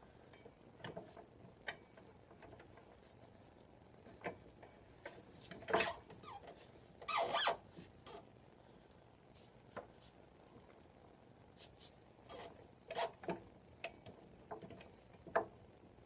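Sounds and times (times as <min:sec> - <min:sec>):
wheel squeaking: 0:05.7 - 0:07.6.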